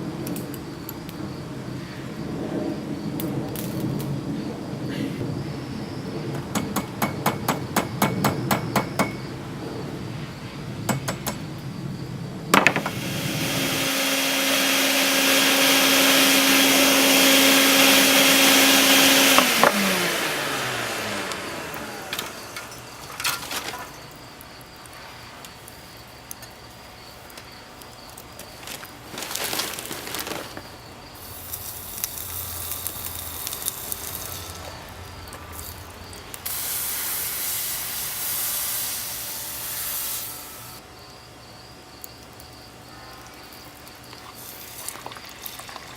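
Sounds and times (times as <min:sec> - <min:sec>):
power grinder grinding metal: 0:12.6 - 0:23.8, 0:31.6 - 0:40.8.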